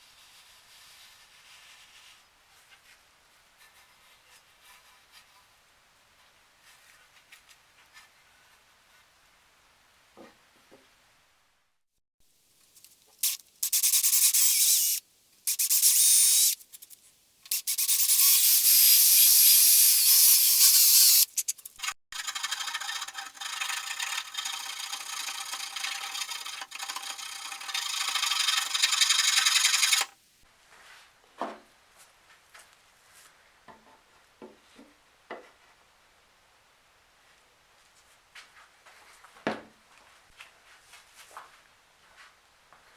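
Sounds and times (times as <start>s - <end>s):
wood being sanded by hand: 22.2s - 30.1s.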